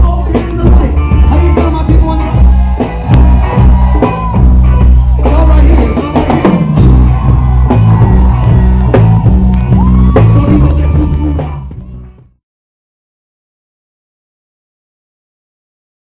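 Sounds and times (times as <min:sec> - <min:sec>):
live reggae band playing: 0:00.0 - 0:12.4.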